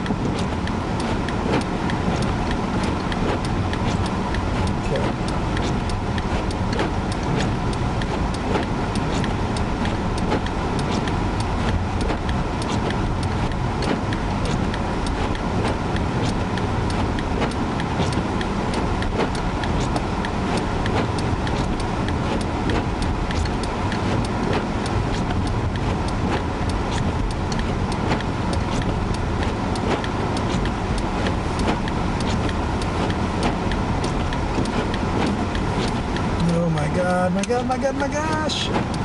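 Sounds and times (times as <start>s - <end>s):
car road and engine rumble: 0.0s - 39.0s
small sharp ticks: 0.2s - 39.0s.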